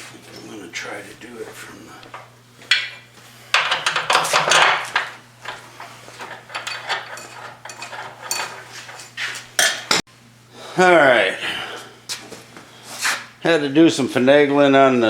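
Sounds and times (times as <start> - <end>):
metal clanking and rattling: 2.7 - 9.1.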